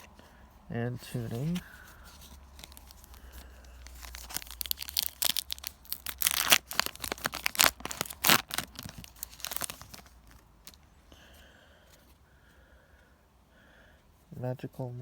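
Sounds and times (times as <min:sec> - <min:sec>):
foil wrapper tearing and crinkling: 0:02.2 - 0:10.8.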